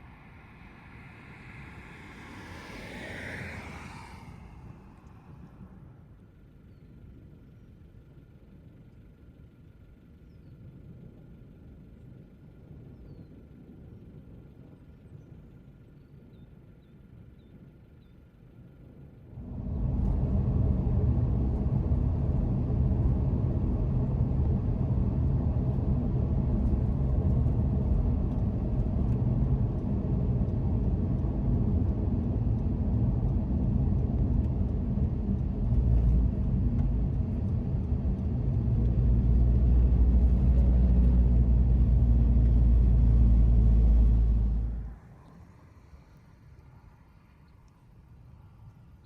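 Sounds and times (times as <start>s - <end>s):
car driving rumble: 0.0s - 6.7s, 19.3s - 45.2s.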